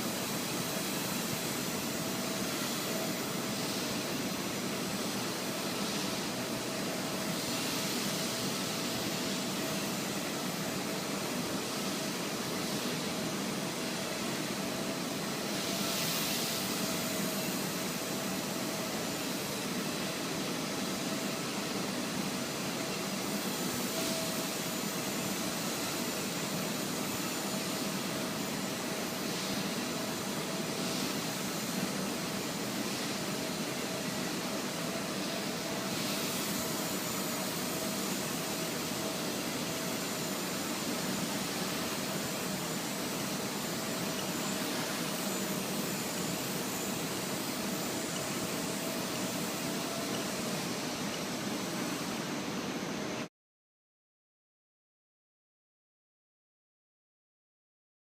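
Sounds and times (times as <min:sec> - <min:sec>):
rushing hiss: 0:23.2 - 0:51.0.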